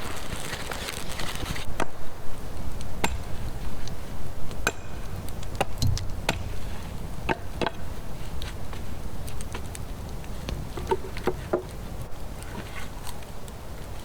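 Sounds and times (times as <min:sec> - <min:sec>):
sharp knocks: 0:05.6 - 0:06.6
dull low thump: 0:05.6 - 0:07.9.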